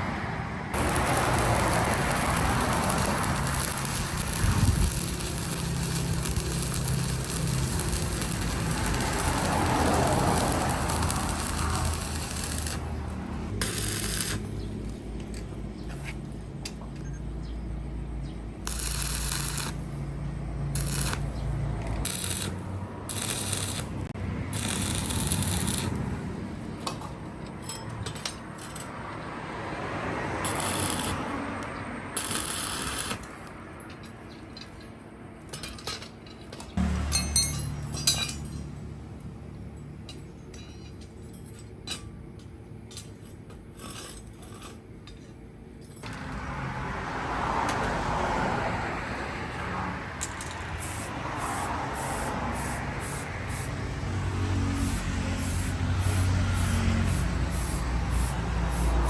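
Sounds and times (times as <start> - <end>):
metal scraping and rattling: 0.7 - 17.0, 18.6 - 29.3, 30.4 - 38.9, 42.9 - 46.5.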